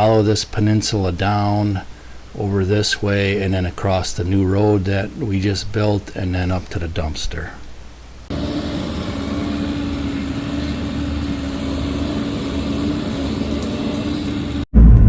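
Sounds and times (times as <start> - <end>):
diesel engine running: 8.3 - 14.7.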